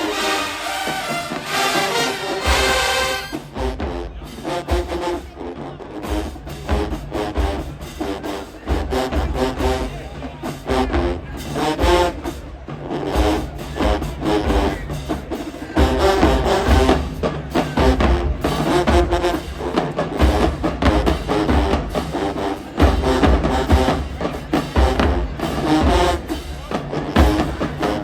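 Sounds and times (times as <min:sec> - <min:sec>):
marching band playing: 0:00.0 - 0:28.0
bass drums pounding: 0:08.7 - 0:28.0.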